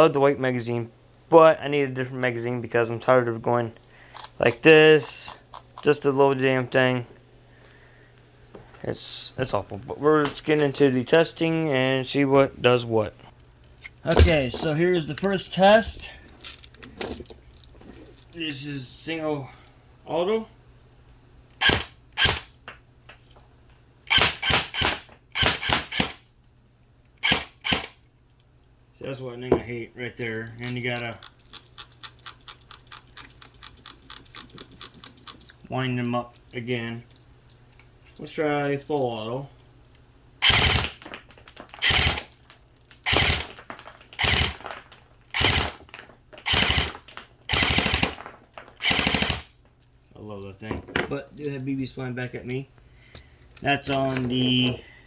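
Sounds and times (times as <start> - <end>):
airsoft rifle shots: 21.6 - 22.5, 24.1 - 26.2, 40.4 - 41.0, 41.8 - 42.3, 43.1 - 43.6, 44.2 - 44.6.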